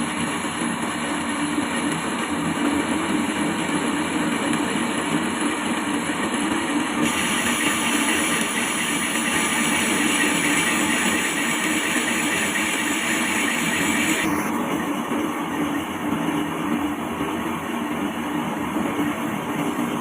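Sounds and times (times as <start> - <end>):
harsh hissing noise: 7.0 - 14.5
metal lathe motor hum: 7.0 - 15.0.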